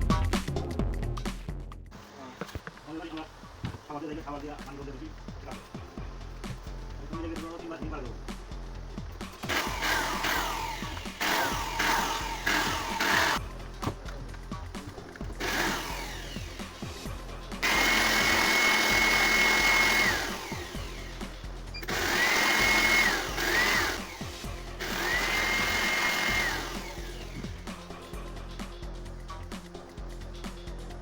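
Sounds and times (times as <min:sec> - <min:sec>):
cordless screwdriver whining: 0:09.4 - 0:13.4, 0:15.4 - 0:17.0, 0:17.6 - 0:27.7.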